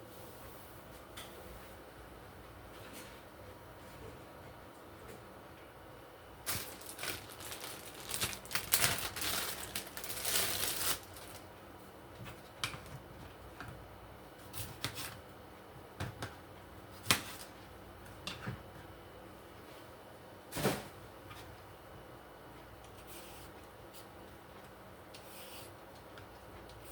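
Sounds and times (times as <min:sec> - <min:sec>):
rustling and crinkling: 0:06.5 - 0:11.5.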